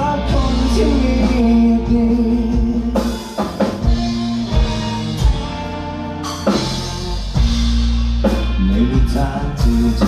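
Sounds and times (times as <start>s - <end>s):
drum kit hits and fills: 0.0s - 10.0s
live band music: 0.0s - 10.0s.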